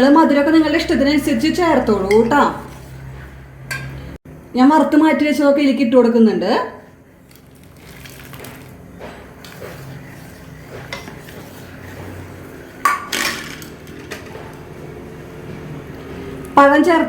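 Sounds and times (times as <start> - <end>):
metal spoon scraping a pot: 1.8 - 4.0, 9.3 - 12.4.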